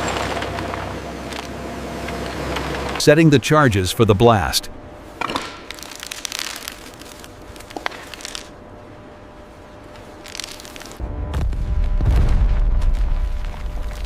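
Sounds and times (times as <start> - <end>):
crackling and crunching clicks: 5.4 - 8.6, 9.9 - 11.0
deep blast rumble: 11.0 - 14.0.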